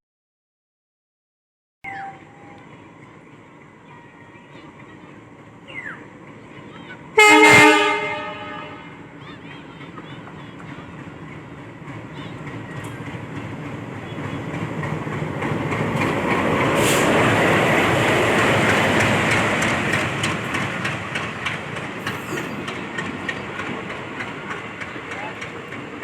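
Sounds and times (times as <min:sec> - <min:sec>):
train passing rushing: 0:01.9 - 0:26.0
wheels clacking over rail joints: 0:09.3 - 0:26.0.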